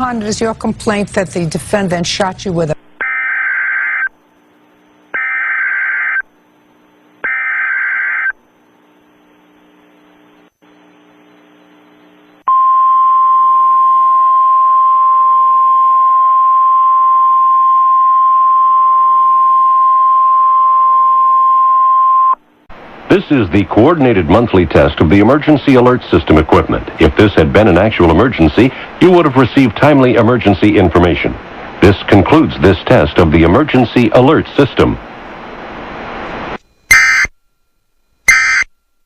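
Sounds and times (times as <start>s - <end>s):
steady attention tone: 2.8s - 22.6s, 36.6s - 39.0s
digital header data bursts: 5.2s - 6.2s, 7.2s - 8.4s.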